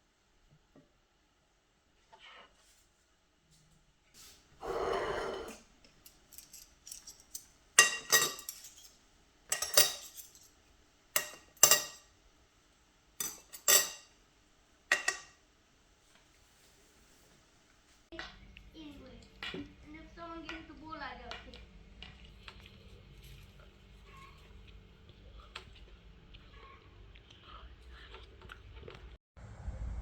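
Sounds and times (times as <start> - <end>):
crockery and cutlery clinking: 4.7 - 12.1, 13.2 - 14.2, 14.9 - 15.4.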